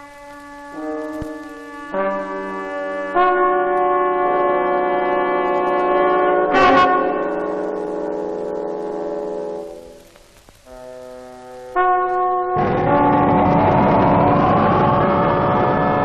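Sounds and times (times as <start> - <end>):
long held music chords: 0.0 - 16.0.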